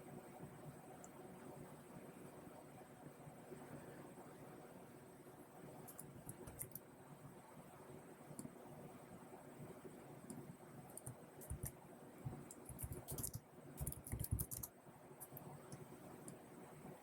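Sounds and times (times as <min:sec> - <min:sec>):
faint steady hum: 0:00.0 - 0:17.0
keyboard typing clicks: 0:05.9 - 0:06.8, 0:10.9 - 0:16.4.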